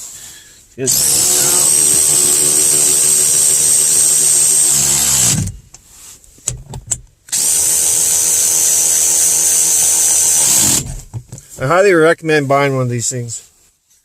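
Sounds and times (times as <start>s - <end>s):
power tool whining: 0.8s - 5.6s, 7.3s - 11.2s.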